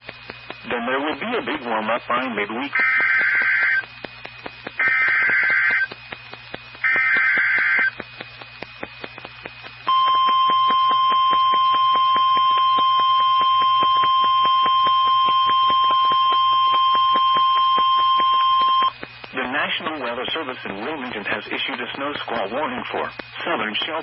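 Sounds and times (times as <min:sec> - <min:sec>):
steady warning alarm tone: 0:00.1 - 0:24.0
warbling digital data tone: 0:04.8 - 0:05.9, 0:06.8 - 0:08.0.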